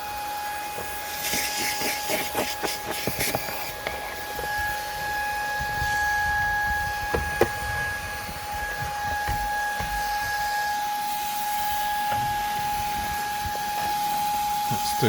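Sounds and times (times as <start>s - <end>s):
cordless vacuum whine: 0.0s - 15.0s
sharp knocks: 7.1s - 10.7s.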